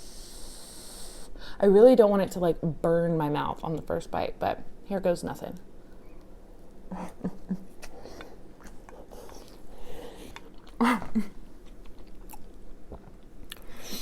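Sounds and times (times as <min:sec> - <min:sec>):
woman chewing wetly: 0:07.7 - 0:13.7.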